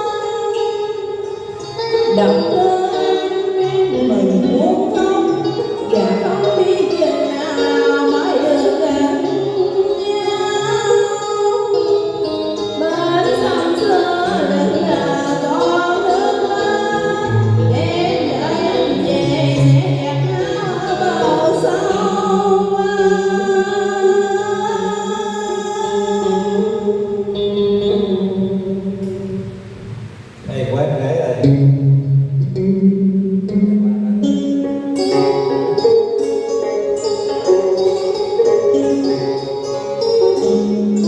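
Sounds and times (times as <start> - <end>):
person singing: 0.0 - 28.2
instrumental accompaniment: 0.0 - 41.0.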